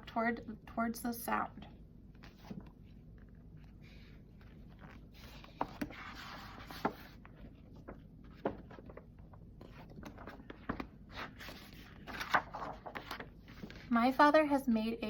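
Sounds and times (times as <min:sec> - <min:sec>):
paper page rustling: 0:02.1 - 0:13.9.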